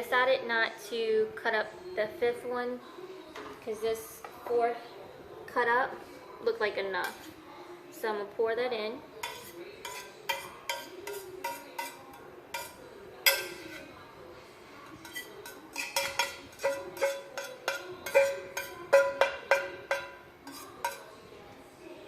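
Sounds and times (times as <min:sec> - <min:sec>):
spoon clinking against a bowl: 0:09.2 - 0:13.9, 0:15.0 - 0:21.2.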